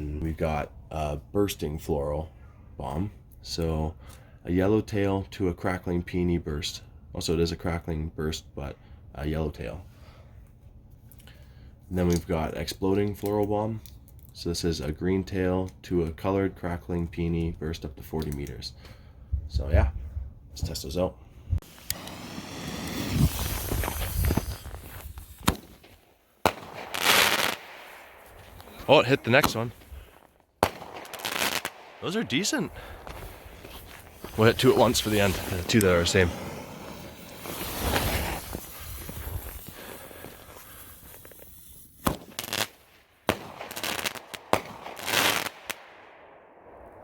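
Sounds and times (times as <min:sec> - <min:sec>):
firework hissing launch: 0:21.6 - 0:29.0, 0:32.7 - 0:45.8
firework sharp bang: 0:21.8 - 0:28.0, 0:42.0 - 0:42.4.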